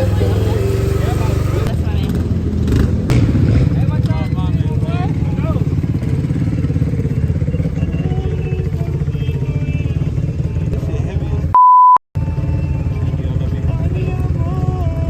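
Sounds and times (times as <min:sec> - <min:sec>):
censor bleep: 0:11.6 - 0:12.0.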